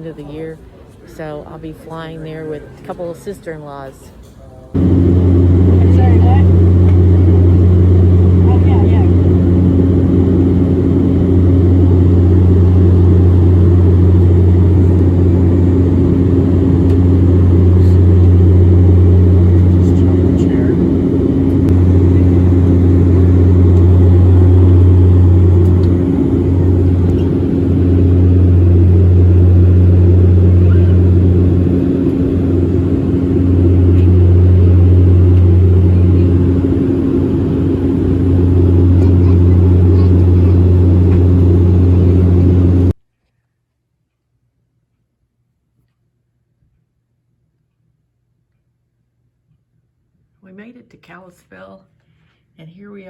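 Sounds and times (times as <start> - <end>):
faint steady tones: 4.8 - 42.9
airliner engines humming: 4.8 - 43.0.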